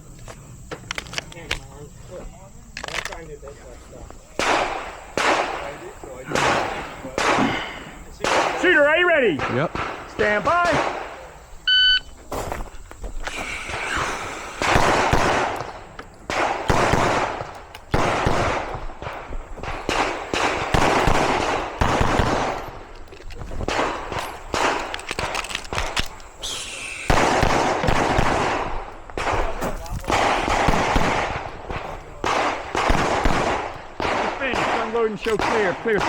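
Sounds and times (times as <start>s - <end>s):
pistol shots: 4.4s - 11.3s, 13.7s - 22.9s, 23.6s - 26.2s, 27.0s - 36.0s.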